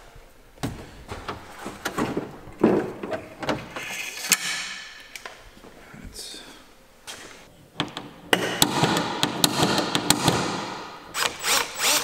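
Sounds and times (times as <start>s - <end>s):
clicks and knocks on car parts: 7.8s - 10.7s.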